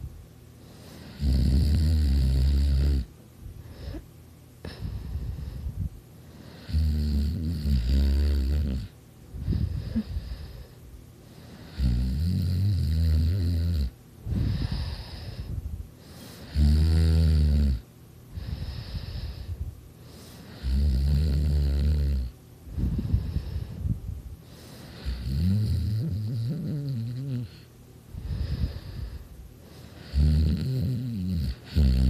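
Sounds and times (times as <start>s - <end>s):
person snoring loudly: 1.0s - 3.1s, 6.6s - 8.9s, 11.7s - 15.5s, 16.4s - 17.8s, 20.4s - 22.3s, 24.8s - 27.6s, 29.9s - 32.0s
breathy exhale: 14.2s - 16.6s, 22.7s - 25.3s, 28.1s - 30.2s.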